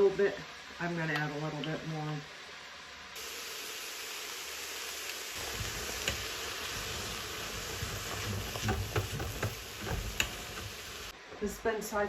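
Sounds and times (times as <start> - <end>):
vegetables sizzling in a pot: 0.0 - 12.0
spoon stirring and knocking pot: 7.6 - 11.0.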